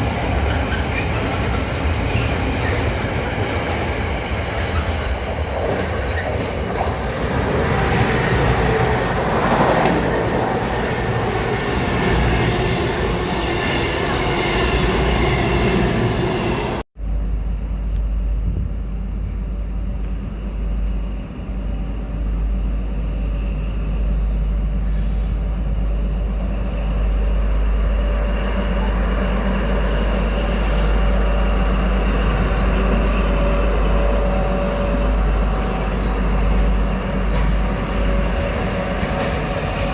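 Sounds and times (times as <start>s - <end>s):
train wheel squeal: 0.0s - 5.2s, 22.8s - 39.9s
deep low train rumble: 0.0s - 39.9s
train running on rails: 0.0s - 39.9s.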